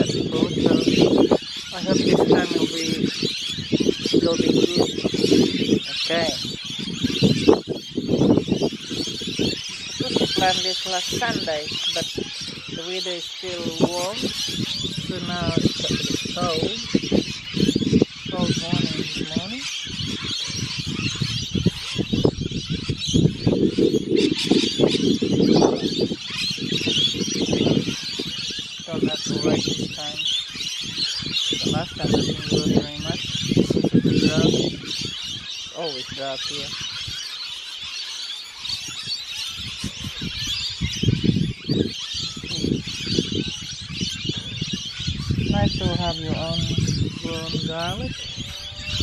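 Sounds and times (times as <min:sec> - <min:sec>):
parrots chirping: 0:00.0 - 0:49.0.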